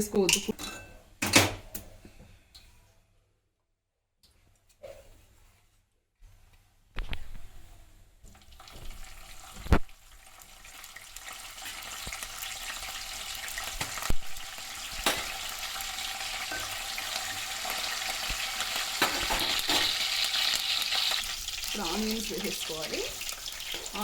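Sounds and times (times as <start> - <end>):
seeds sizzling in hot oil: 8.2 - 24.0.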